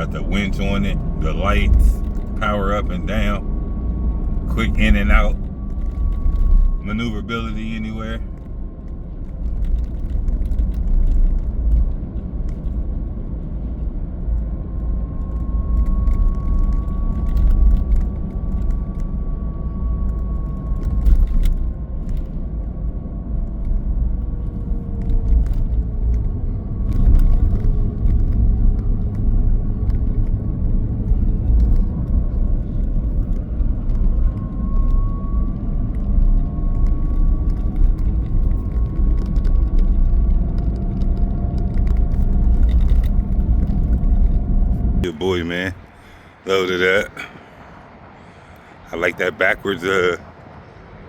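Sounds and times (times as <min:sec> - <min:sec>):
faint whine: 0:00.0 - 0:51.0
vehicle road rumble: 0:00.0 - 0:51.0
small rattles: 0:37.1 - 0:44.4.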